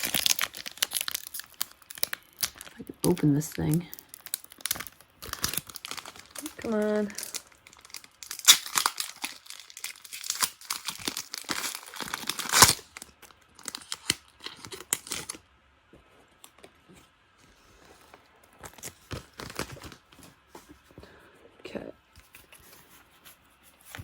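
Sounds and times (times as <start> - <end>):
foil wrapper crinkling and tearing: 0.0 - 15.4, 18.6 - 20.1
soft handling sounds: 15.8 - 24.0.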